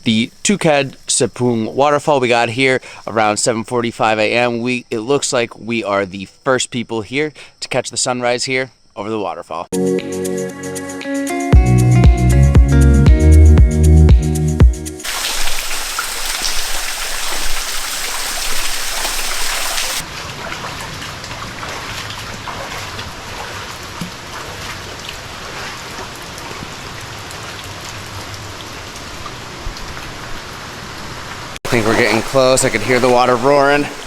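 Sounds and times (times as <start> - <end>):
waterfall rushing: 15.0 - 20.0, 31.7 - 34.0.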